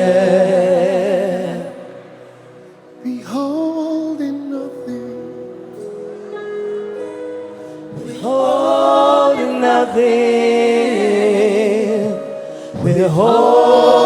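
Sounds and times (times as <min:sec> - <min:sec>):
voices singing with vibrato: 0:07.9 - 0:14.0.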